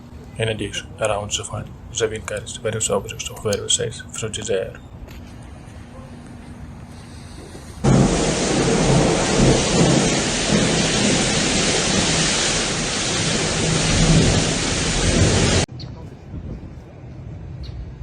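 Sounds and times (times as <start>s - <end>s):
wind: 0.0s - 18.0s
heavy rain: 7.8s - 15.7s.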